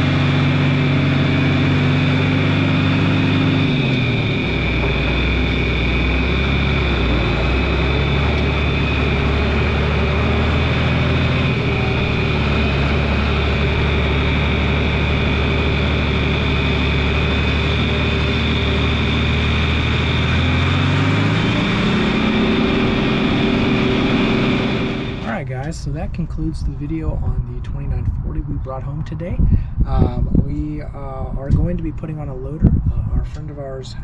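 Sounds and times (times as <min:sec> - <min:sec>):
tractor diesel engine running: 0:00.0 - 0:25.6
high whine: 0:00.0 - 0:28.8.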